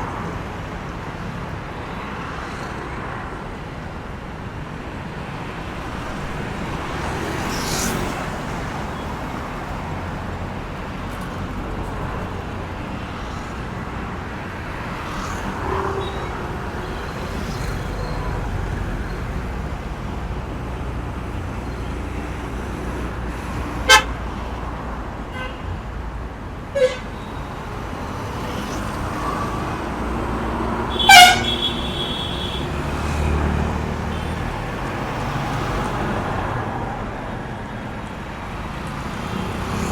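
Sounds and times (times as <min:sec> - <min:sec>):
traffic passing on road: 0:00.0 - 0:39.9
car horn toots: 0:23.8 - 0:24.1, 0:26.8 - 0:27.2, 0:30.9 - 0:32.7.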